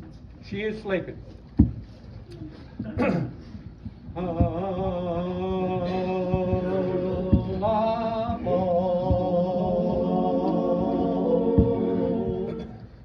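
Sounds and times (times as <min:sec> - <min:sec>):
group of voices singing: 0:04.2 - 0:13.0.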